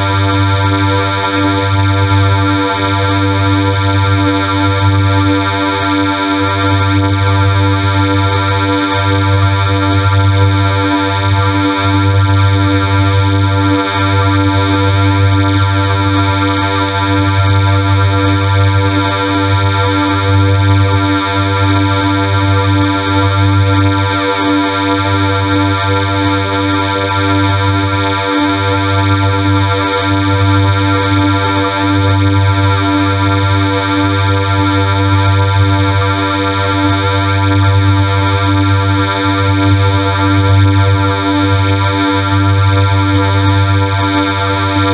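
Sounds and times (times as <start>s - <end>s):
harsh synthesized chord: 44.2s - 44.9s
heavy low hum: 44.6s - 44.9s.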